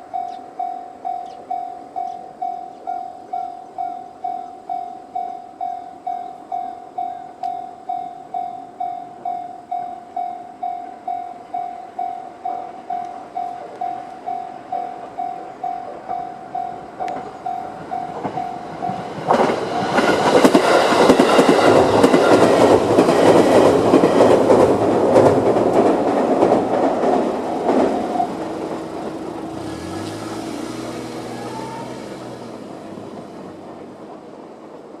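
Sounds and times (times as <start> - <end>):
level crossing warning bell: 0.0 - 24.7, 26.8 - 34.2
electric train passing: 0.0 - 35.0
train wheels clacking: 16.0 - 35.0.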